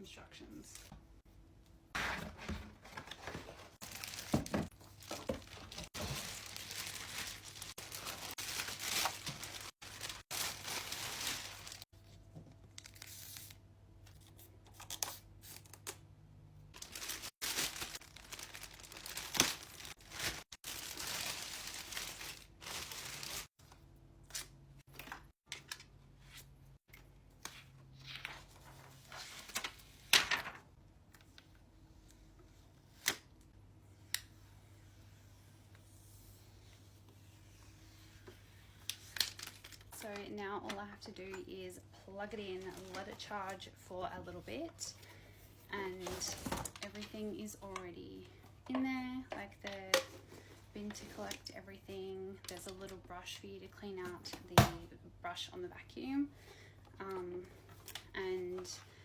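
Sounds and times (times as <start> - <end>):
packaging tearing and crinkling: 3.8 - 11.9, 16.8 - 23.5.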